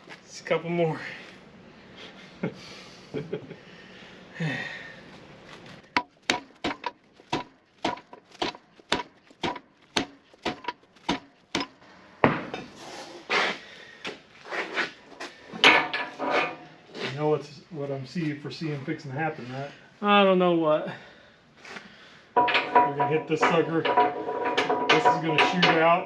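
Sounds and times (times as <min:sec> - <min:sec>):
metal knocks and clatter: 0:05.9 - 0:12.7, 0:15.5 - 0:16.6, 0:22.4 - 0:26.0
hammer striking metal punch: 0:06.0 - 0:12.6, 0:22.4 - 0:26.0.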